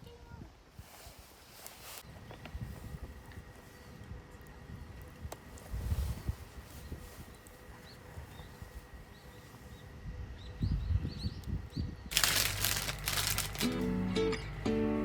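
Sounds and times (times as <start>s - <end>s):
acoustic guitar music: 13.6s - 15.0s.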